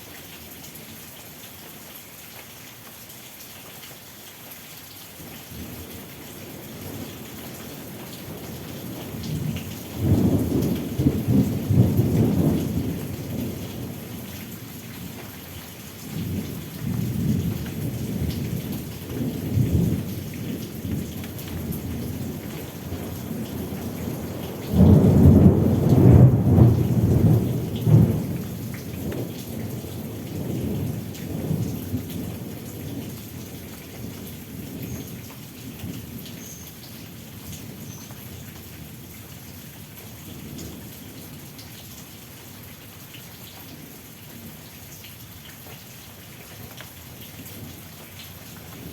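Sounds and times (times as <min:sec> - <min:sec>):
steady rain falling: 0:00.0 - 0:48.9
thunder rumbling: 0:08.3 - 0:14.2, 0:16.2 - 0:33.1.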